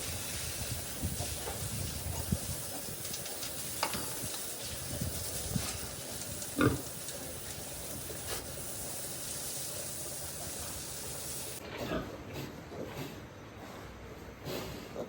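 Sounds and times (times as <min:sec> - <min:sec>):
steady hiss: 0:00.0 - 0:11.6
pigs grunting: 0:06.2 - 0:07.4, 0:11.6 - 0:13.3.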